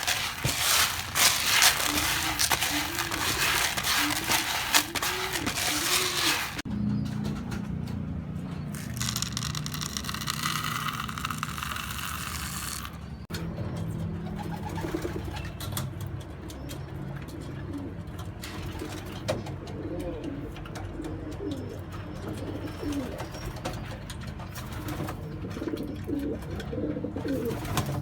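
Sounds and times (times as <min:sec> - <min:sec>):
pigeons cooing: 0:18.6 - 0:23.5, 0:25.2 - 0:28.0.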